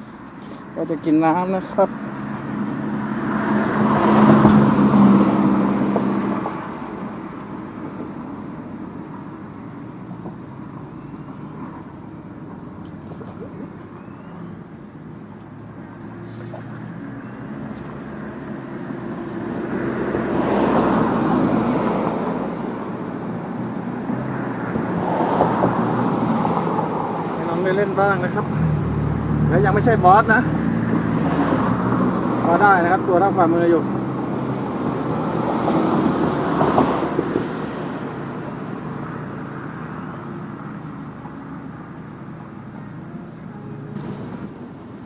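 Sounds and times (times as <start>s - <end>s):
vehicle engine passing by: 1.9s - 7.2s, 15.6s - 43.0s.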